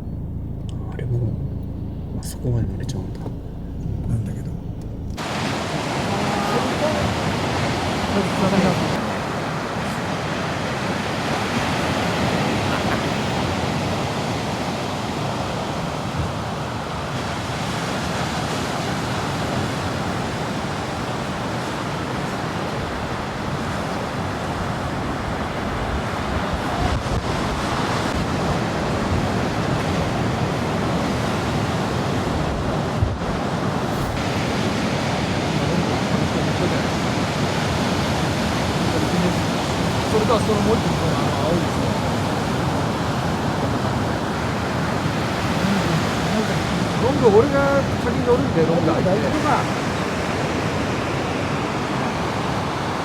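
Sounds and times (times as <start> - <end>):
ocean surf breaking: 5.2 - 53.0
wind on microphone: 15.2 - 35.6.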